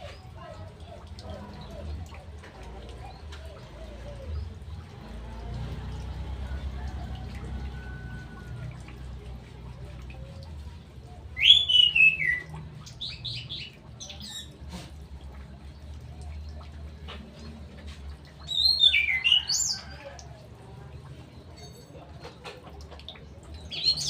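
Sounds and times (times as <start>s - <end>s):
bird singing warbling phrases: 10.2s - 14.6s, 18.4s - 20.1s, 23.2s - 24.0s.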